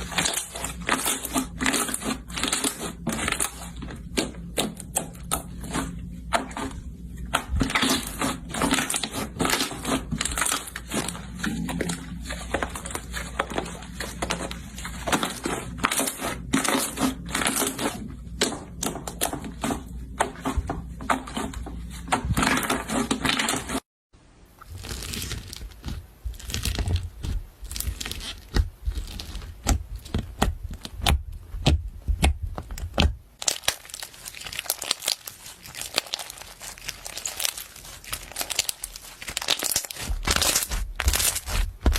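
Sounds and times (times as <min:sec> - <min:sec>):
slime crackling and popping: 0:07.4 - 0:17.8, 0:24.6 - 0:41.9.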